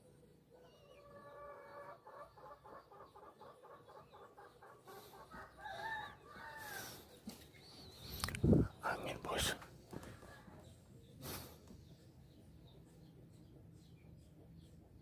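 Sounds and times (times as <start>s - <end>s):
chickens clucking: 0.0s - 15.0s
small birds chirping: 0.0s - 15.0s
rooster crowing: 5.3s - 7.0s.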